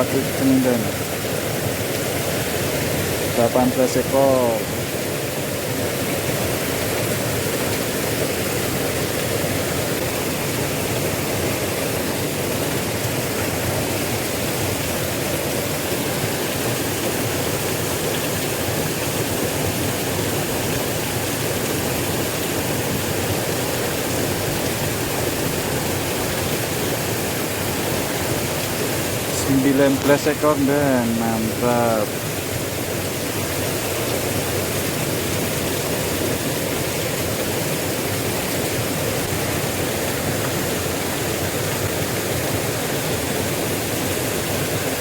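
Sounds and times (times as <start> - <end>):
river water rushing: 0.0 - 45.0.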